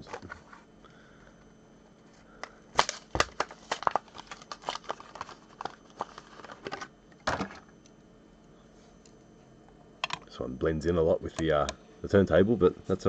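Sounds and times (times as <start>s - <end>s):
plastic packaging crinkling: 2.8s - 7.6s.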